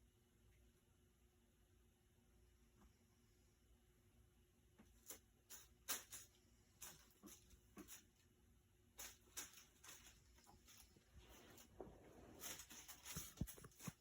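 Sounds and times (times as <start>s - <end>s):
light clicks and rustles: 4.8s - 8.2s, 9.0s - 14.0s.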